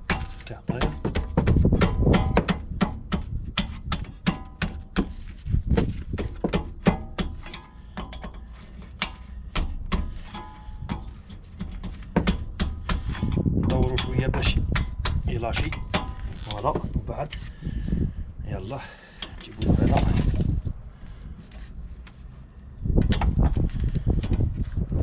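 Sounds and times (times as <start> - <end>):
metal tool clicks and knocks: 6.2 - 17.5.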